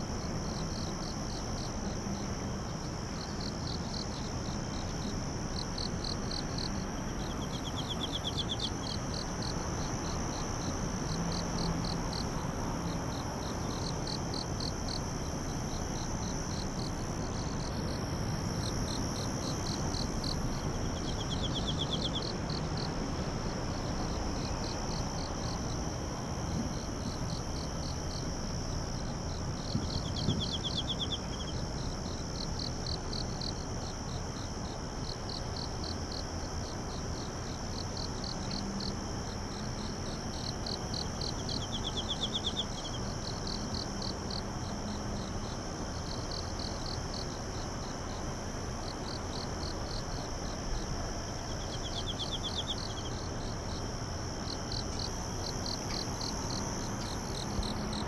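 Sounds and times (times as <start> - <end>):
insect chirps pulsing: 0.0 - 58.0
insects trilling: 0.0 - 58.0
faster lower insect trill: 3.0 - 58.0.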